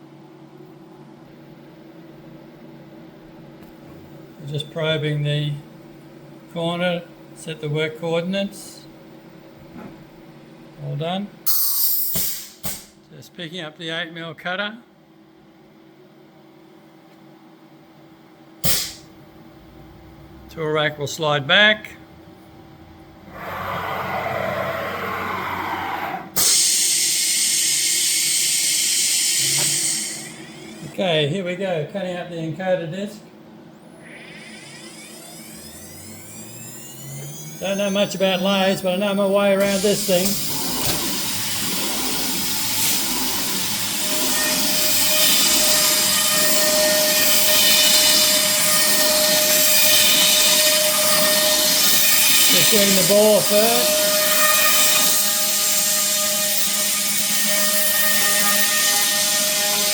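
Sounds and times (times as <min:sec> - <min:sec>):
compressed air hissing: 0:11.5 - 0:12.9, 0:18.6 - 0:19.1, 0:26.4 - 0:30.8, 0:37.5 - 0:56.2
router spindle whine: 0:33.8 - 0:59.9.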